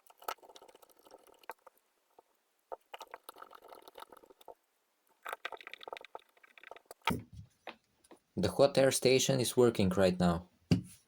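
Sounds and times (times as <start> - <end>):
crackly rustling: 0.0 - 8.3.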